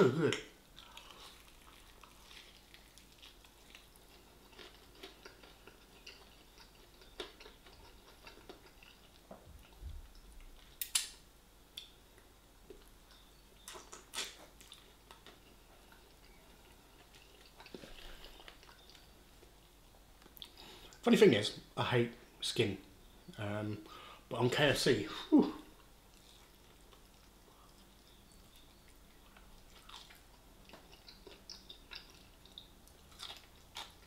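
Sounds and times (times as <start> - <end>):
person chewing: 0.7 - 11.1, 11.8 - 21.0, 25.8 - 34.0
wet mouth clicks and smacks: 13.6 - 14.8.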